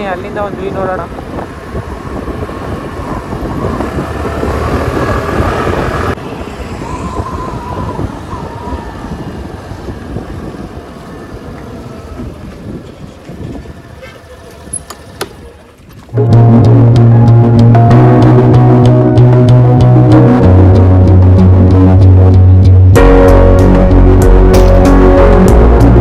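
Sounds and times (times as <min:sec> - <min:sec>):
scooter engine running: 0:00.0 - 0:16.2
wind buffeting microphone: 0:00.0 - 0:16.6.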